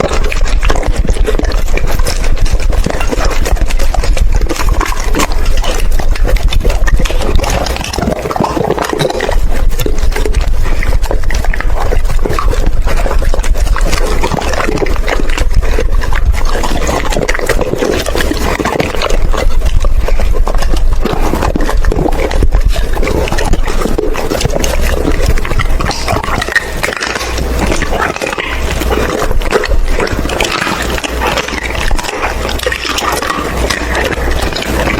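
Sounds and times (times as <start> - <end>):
dog chewing and crunching food: 0.0 - 34.9.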